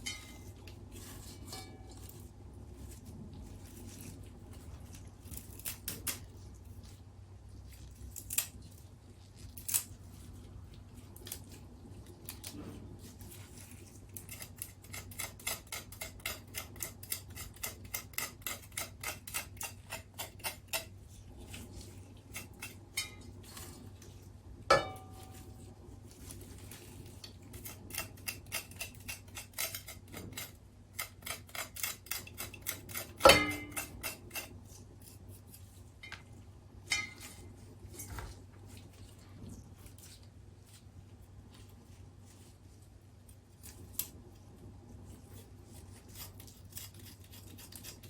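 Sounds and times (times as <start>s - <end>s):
steady low hum: 0.0s - 17.7s, 18.7s - 48.0s
dish clink with ring: 24.7s - 25.3s
utensils and dishes clicking: 27.6s - 34.5s.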